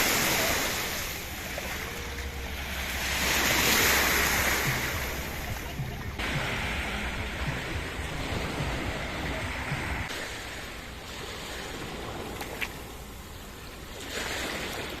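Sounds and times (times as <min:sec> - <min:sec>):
wind buffeting microphone: 0:00.0 - 0:10.2
surf washing onto beach: 0:00.0 - 0:13.2.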